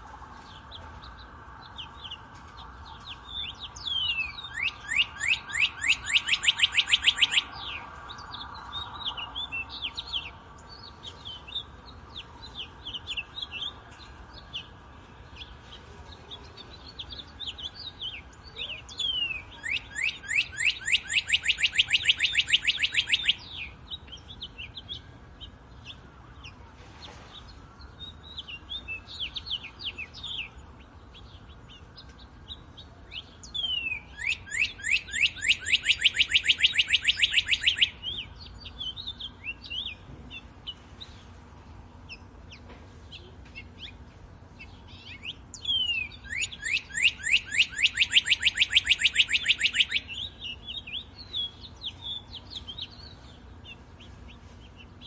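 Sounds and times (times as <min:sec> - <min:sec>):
birds chirping: 0:00.0 - 0:55.0
bird fast trill: 0:03.3 - 0:07.8, 0:18.9 - 0:23.8, 0:33.4 - 0:40.0, 0:44.9 - 0:53.2.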